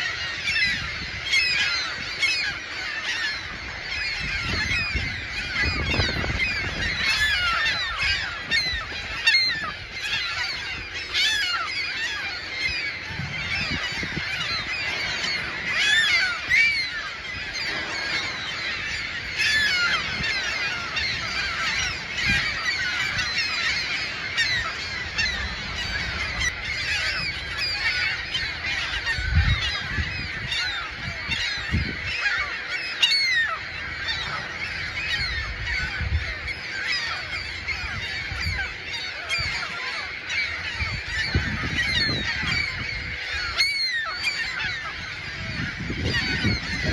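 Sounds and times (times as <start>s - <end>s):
gull colony screeching: 0.0s - 46.9s.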